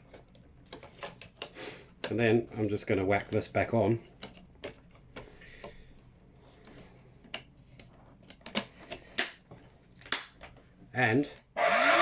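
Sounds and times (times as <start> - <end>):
plastic parts clicking together: 6.6 - 9.4.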